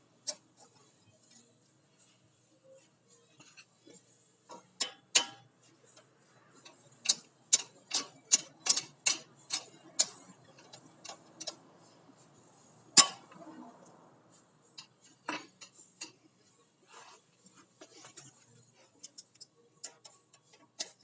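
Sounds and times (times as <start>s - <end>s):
metal-on-metal clicks: 6.0s - 11.6s.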